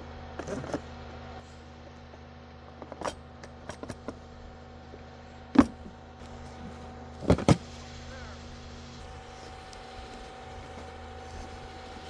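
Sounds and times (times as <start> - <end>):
low engine hum: 0.0 - 12.0
metallic clinks and knocks: 2.7 - 4.2, 5.6 - 5.9.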